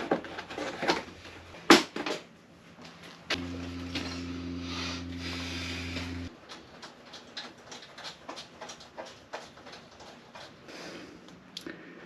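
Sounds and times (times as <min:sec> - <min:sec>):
tools and parts clattering: 0:00.0 - 0:02.3
small electric motor running: 0:03.4 - 0:06.3.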